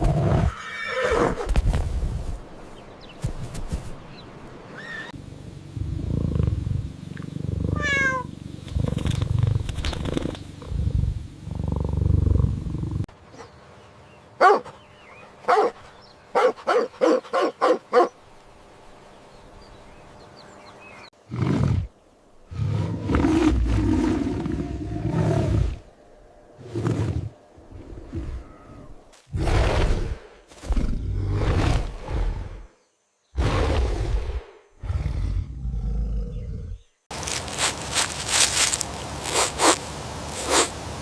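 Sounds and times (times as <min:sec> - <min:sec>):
animal low rumbling: 0:05.1 - 0:13.1, 0:21.3 - 0:32.7, 0:34.8 - 0:37.0.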